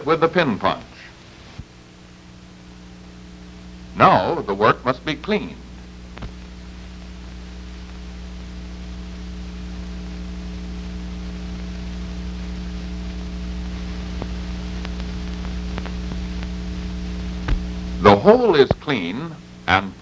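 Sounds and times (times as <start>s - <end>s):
electrical hum and hiss: 0.0s - 20.0s
faint clicks: 14.2s - 16.5s.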